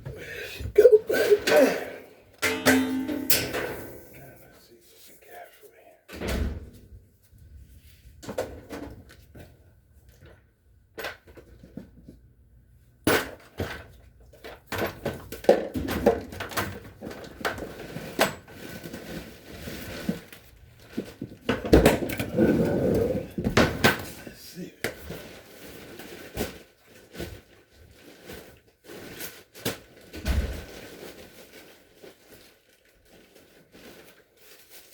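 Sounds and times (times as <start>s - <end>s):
tools clanking on dryer: 2.4s - 4.3s.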